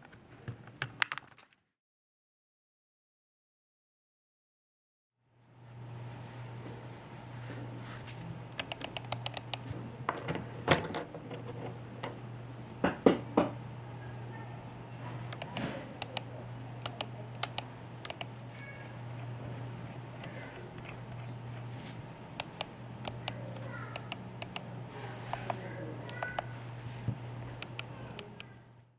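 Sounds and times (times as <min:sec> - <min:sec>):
steady low hum: 0:05.3 - 0:28.9
mouse button clicks: 0:08.6 - 0:09.6, 0:15.3 - 0:18.3, 0:22.4 - 0:24.7, 0:25.3 - 0:26.5, 0:27.6 - 0:28.6.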